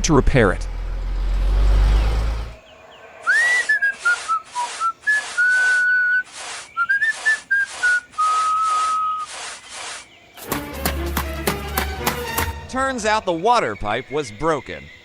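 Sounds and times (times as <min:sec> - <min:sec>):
person whistling a tune: 0:03.3 - 0:09.3.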